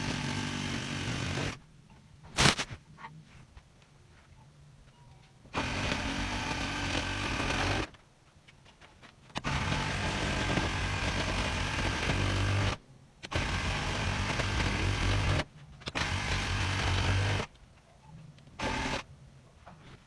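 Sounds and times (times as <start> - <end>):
electric rug tool running: 9.4 - 15.4, 16.0 - 17.5, 18.6 - 19.0.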